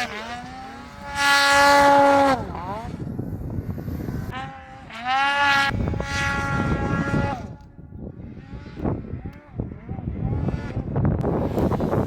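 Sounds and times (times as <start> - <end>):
snowmobile engines revving: 0.0 - 12.0.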